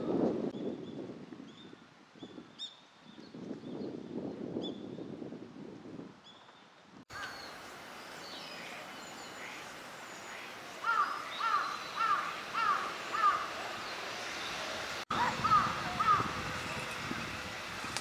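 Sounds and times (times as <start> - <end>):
small birds chirping: 6.2 - 18.0.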